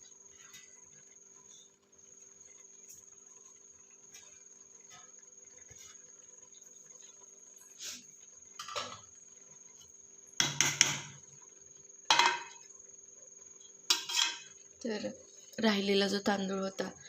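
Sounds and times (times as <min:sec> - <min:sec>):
metal spoon knocking steel pot: 0:12.1 - 0:12.5.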